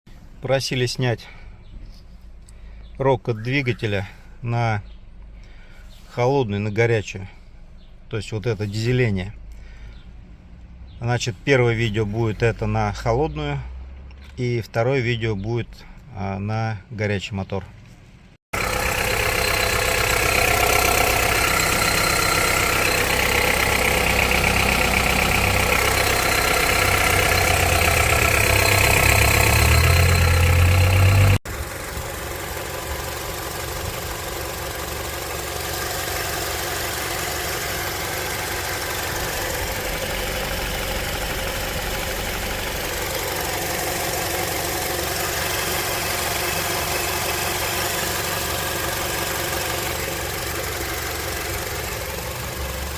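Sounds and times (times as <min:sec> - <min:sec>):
car engine idling with clatter: 0:17.8 - 0:52.9.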